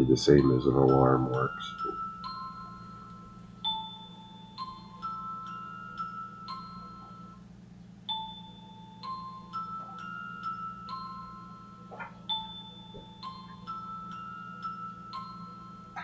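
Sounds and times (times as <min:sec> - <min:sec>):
electronic bell-like chime: 0:00.0 - 0:07.5, 0:08.1 - 0:16.0
steady low hum: 0:00.0 - 0:16.0.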